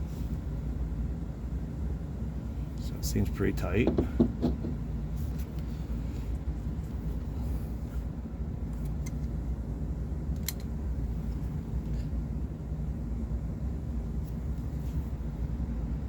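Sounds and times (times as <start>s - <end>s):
low background hum: 0.0s - 16.0s.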